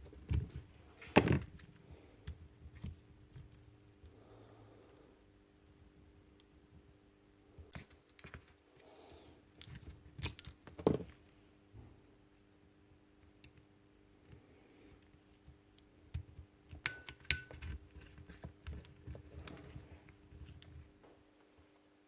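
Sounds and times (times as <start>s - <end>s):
faint clicks and taps on drill: 13.2s - 19.6s.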